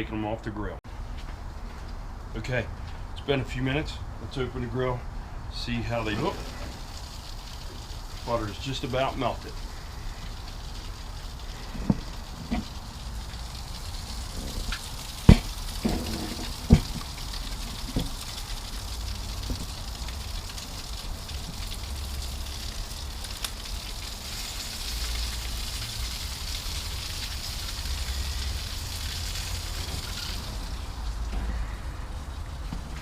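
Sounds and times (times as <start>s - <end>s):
food sizzling on a grill: 6.0s - 31.3s.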